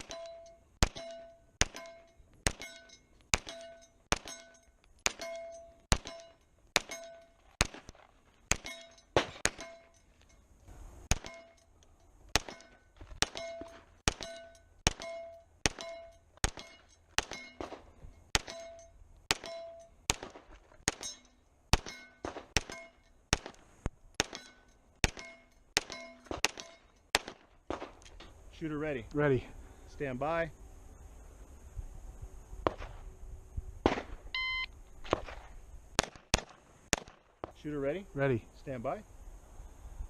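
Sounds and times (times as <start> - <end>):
metallic ring of steel targets: 0.0 - 7.4, 8.5 - 10.5, 11.1 - 23.2, 24.2 - 27.1
pistol shots: 5.0 - 9.7, 11.1 - 11.4, 12.3 - 18.7, 19.3 - 23.6, 24.2 - 28.1, 32.6 - 33.0, 33.8 - 34.2, 35.0 - 37.6.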